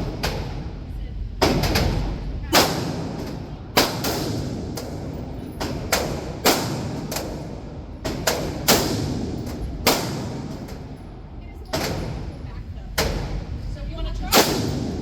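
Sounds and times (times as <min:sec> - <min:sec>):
gunshots with echo: 0:02.5 - 0:10.6.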